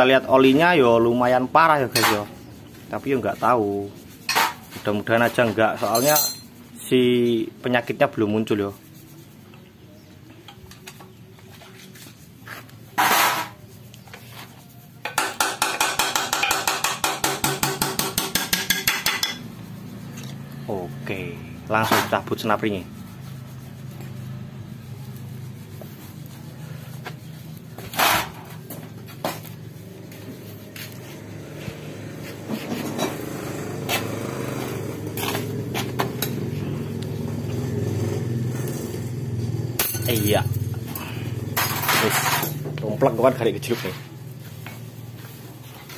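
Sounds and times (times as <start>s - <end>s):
tools and metal parts clicking: 5.9s - 6.6s, 39.8s - 42.7s.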